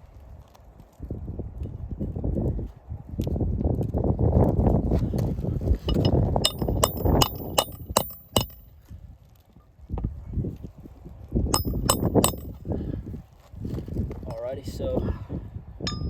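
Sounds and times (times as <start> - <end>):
hammer striking nails: 5.9 - 8.6, 11.6 - 12.6.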